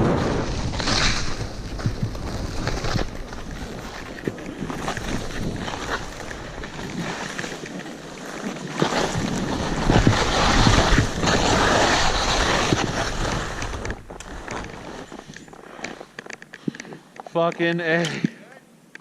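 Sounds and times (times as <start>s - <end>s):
wind buffeting microphone: 0.0s - 8.4s
skis scraping over snow: 0.0s - 17.0s.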